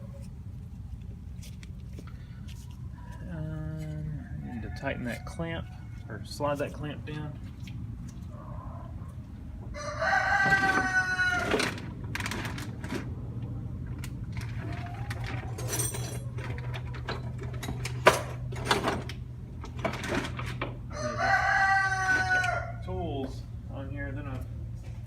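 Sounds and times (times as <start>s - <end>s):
rooster crowing: 4.1s - 6.2s, 9.7s - 11.9s, 20.9s - 22.8s.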